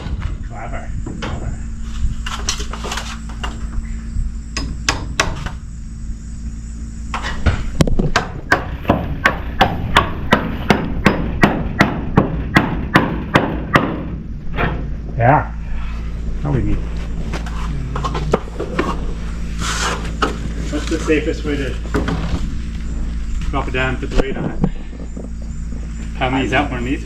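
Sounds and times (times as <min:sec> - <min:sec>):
hammer striking timber: 0:04.6 - 0:05.4, 0:08.1 - 0:14.1.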